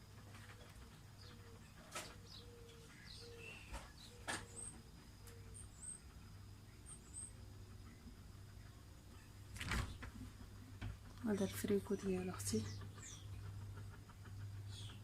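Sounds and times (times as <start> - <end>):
low bird cooing: 0.0 - 5.9.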